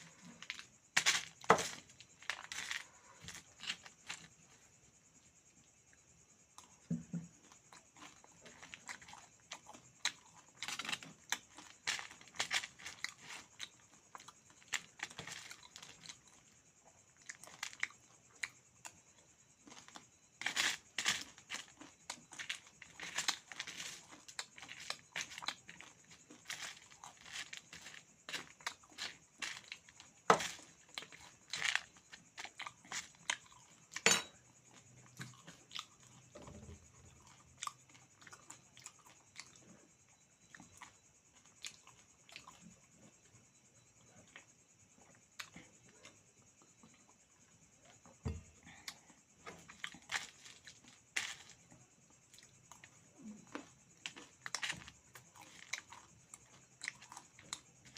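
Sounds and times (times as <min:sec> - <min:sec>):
chewing and crunching food: 0:00.0 - 0:57.9.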